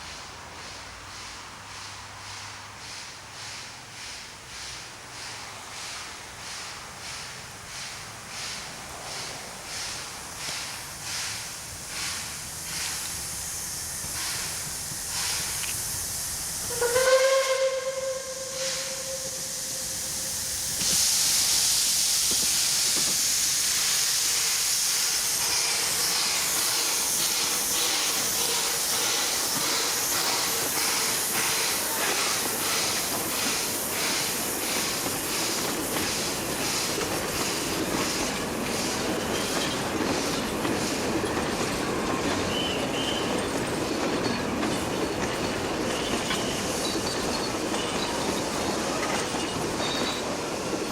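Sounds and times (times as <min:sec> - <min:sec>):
steam hiss: 0:00.0 - 0:50.9
steam locomotive whistle: 0:16.5 - 0:21.1, 0:41.9 - 0:43.4.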